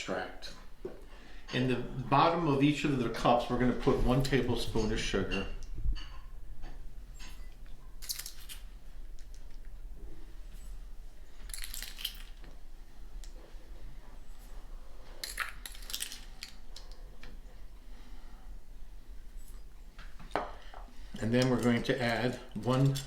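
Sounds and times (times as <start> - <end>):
sugar pouring rustle: 11.4 - 12.4.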